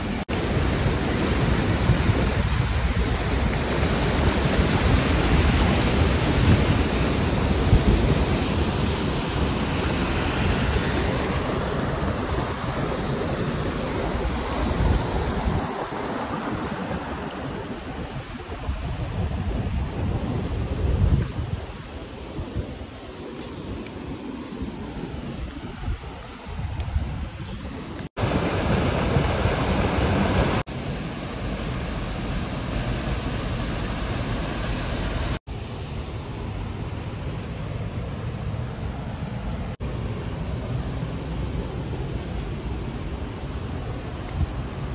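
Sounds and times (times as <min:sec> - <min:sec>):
waterfall rushing water: 0:00.0 - 0:19.0, 0:28.2 - 0:44.9
wind buffeting microphone: 0:00.0 - 0:35.4.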